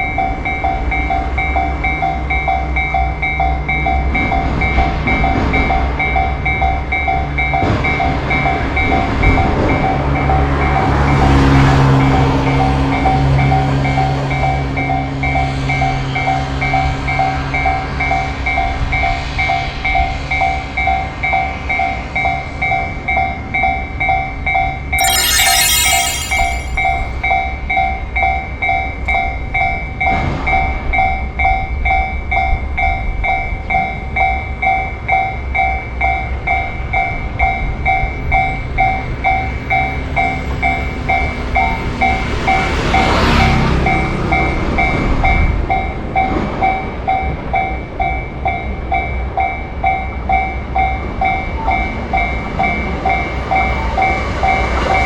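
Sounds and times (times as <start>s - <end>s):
shrill whistle: 25.0s - 27.1s.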